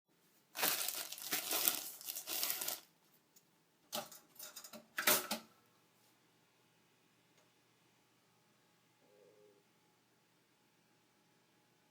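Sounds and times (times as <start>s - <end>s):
plastic bag crinkling: 0.5s - 2.9s.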